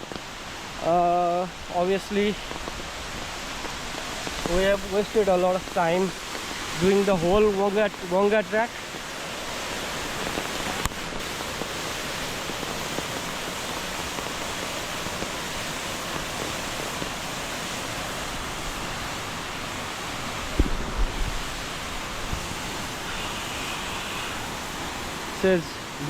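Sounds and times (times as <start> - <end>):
waterfall rushing: 0.0 - 26.0
low thumps: 20.5 - 22.6.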